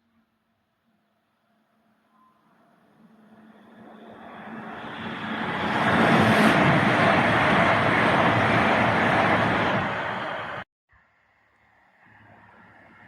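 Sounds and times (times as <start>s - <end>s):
train passing on track: 2.4s - 10.7s.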